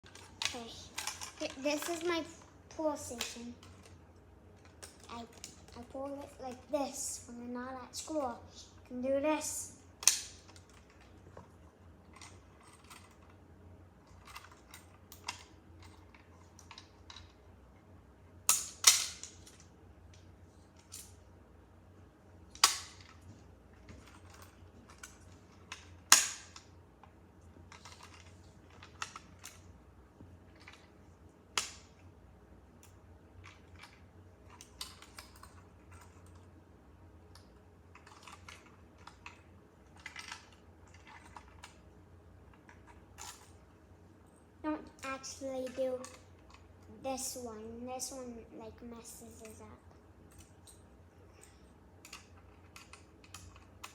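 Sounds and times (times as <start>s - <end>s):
faint clicks and rattles: 0.0s - 7.4s, 10.0s - 13.4s, 14.0s - 17.9s, 22.6s - 31.8s, 32.8s - 36.5s, 37.3s - 47.2s, 49.0s - 53.9s.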